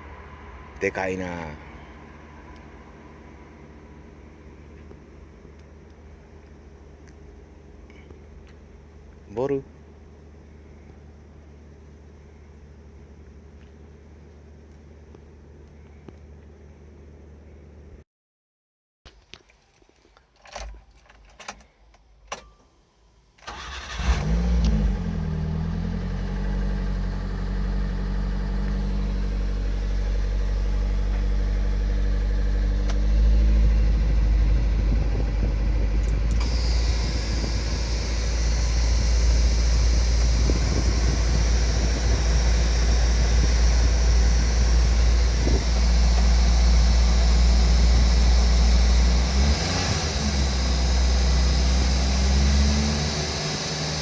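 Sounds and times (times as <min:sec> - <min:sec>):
truck engine cranking and running: 0:23.4 - 0:25.0, 0:34.4 - 0:54.0.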